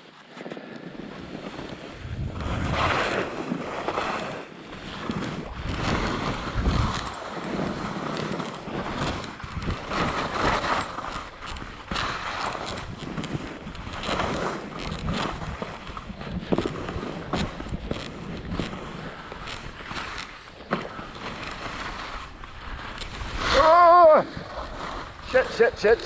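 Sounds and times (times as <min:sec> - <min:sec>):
wind rushing over microphone: 0:00.9 - 0:26.0
hiss of sliding over snow: 0:20.5 - 0:26.0.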